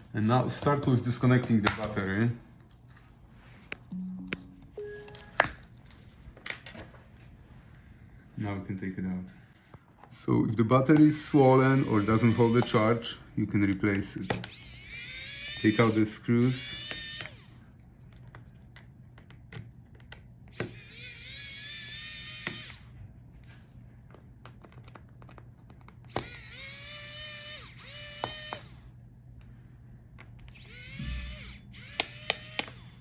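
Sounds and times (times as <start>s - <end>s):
electric screwdriver whirring: 10.9s - 13.0s, 14.2s - 17.6s, 20.5s - 23.0s, 26.1s - 28.8s, 30.5s - 33.0s.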